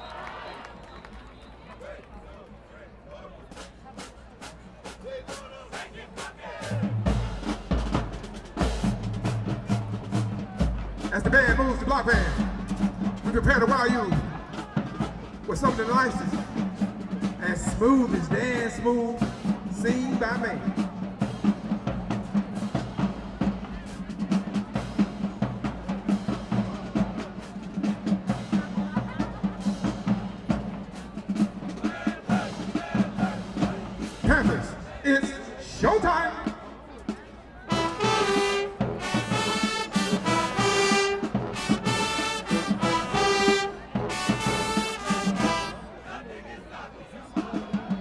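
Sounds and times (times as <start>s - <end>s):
marching band brass playing: 3.5s - 48.0s
low drum beat: 5.3s - 34.9s.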